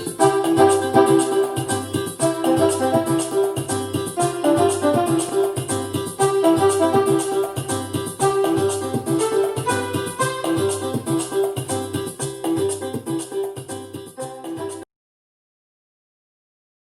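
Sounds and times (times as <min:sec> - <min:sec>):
repeating bass line: 0:00.0 - 0:13.2
background music melody: 0:00.0 - 0:14.9.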